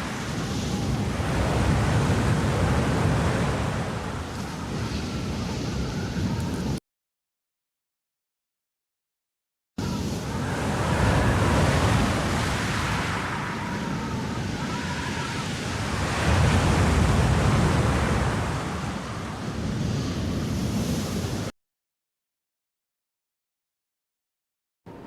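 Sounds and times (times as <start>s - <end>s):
faint wind whistle: 0.0s - 6.8s, 9.8s - 21.5s
gusting wind roar: 0.0s - 6.8s, 9.8s - 21.5s.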